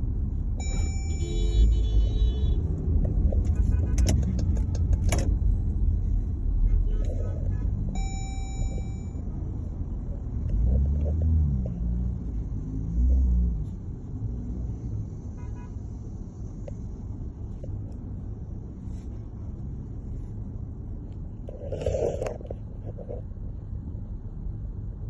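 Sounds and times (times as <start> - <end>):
vehicle engine rumbling: 0.0 - 25.0.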